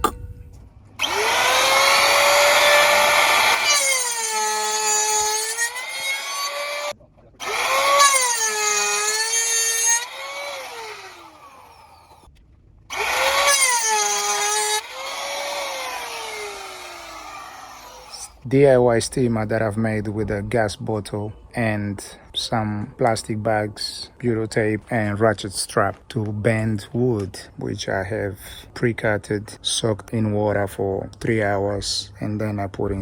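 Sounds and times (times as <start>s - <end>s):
power tool motor whining: 1.0s - 12.3s, 12.9s - 18.3s.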